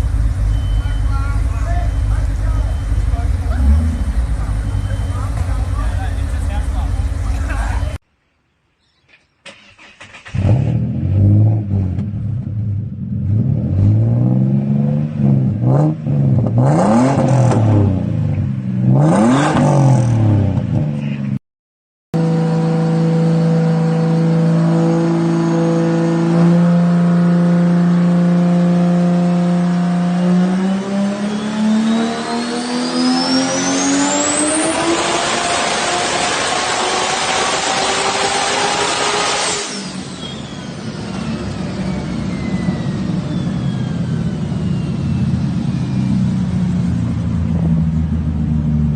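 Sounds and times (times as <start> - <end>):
car engine revving: 0.0 - 8.0, 10.0 - 21.3, 22.2 - 48.9
turbo whistle: 0.5 - 5.4, 39.0 - 46.0.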